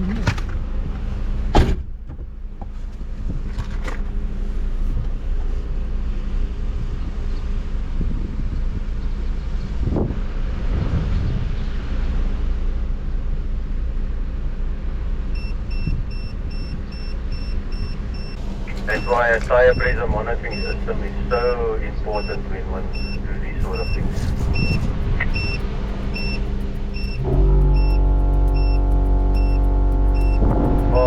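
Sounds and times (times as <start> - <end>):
vehicle engine low rumble: 0.0 - 31.0
wind noise: 6.7 - 12.6, 15.4 - 21.2, 22.9 - 31.0.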